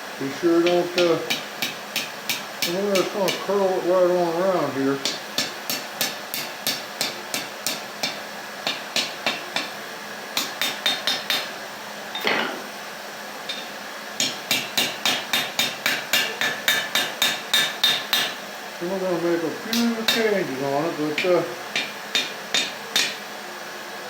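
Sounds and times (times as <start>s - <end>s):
hammer striking metal on anvil: 0.6s - 3.5s, 5.0s - 9.8s, 10.4s - 11.5s, 12.2s - 12.6s, 13.5s - 18.4s, 19.7s - 20.3s, 21.1s - 23.2s.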